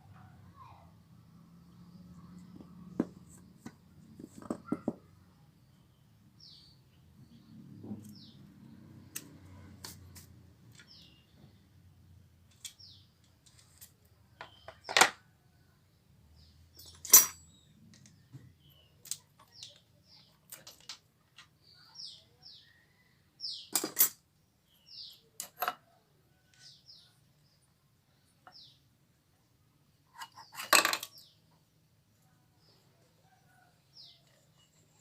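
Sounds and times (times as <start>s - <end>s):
faint birds chirping: 0.0s - 35.0s
metal tools clinking: 16.7s - 17.6s, 23.7s - 24.2s.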